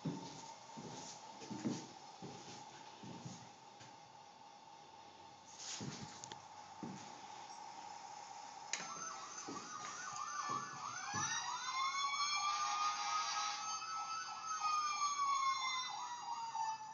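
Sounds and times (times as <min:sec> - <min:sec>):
electronic siren warble and wail: 0:08.8 - 0:16.9.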